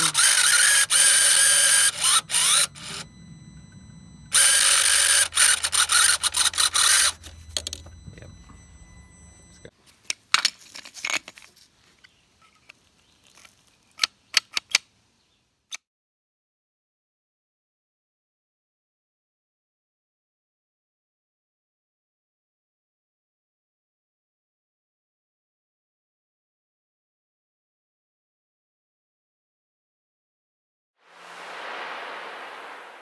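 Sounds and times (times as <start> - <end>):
small motor whirring: 0.0 - 9.7.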